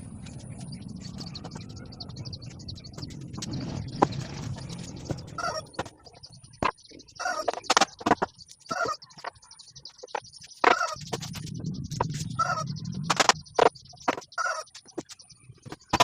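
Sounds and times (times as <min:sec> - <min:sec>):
low rumble: 0:00.0 - 0:05.8.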